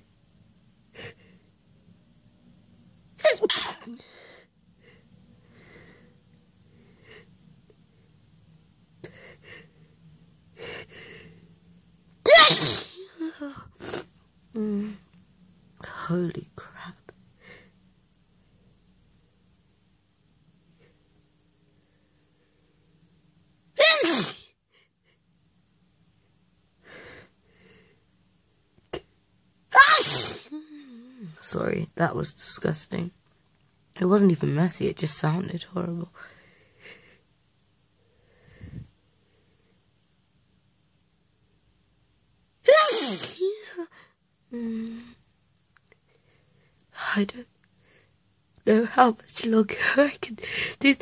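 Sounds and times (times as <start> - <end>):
loud sneeze: 3.2 - 4.0, 12.2 - 14.1, 23.8 - 24.6, 29.7 - 30.6, 42.6 - 43.9
wheezy catching breaths: 9.0 - 10.0, 10.6 - 11.6, 26.8 - 28.1.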